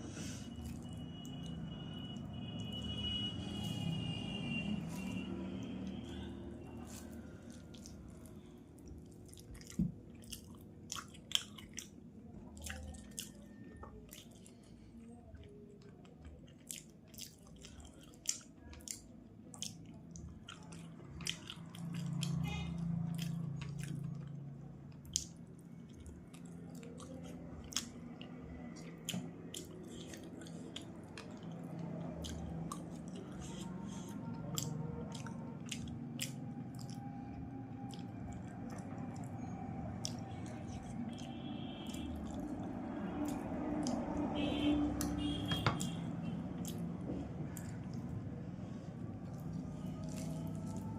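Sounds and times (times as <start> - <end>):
wet chewing and lip-smacking: 0.5 - 50.9.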